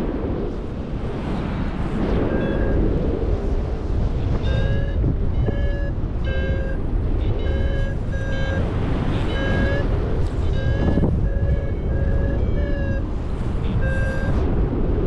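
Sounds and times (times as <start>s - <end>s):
wind rumble on microphone: 0.0s - 15.0s.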